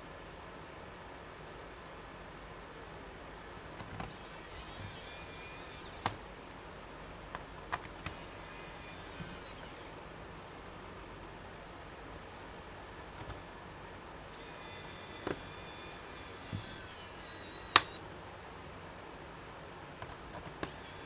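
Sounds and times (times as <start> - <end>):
electric screwdriver whining: 4.0 - 6.3, 7.8 - 9.9, 14.3 - 18.0, 20.6 - 21.0
screwdriver clicks: 7.8 - 9.9, 14.4 - 18.0.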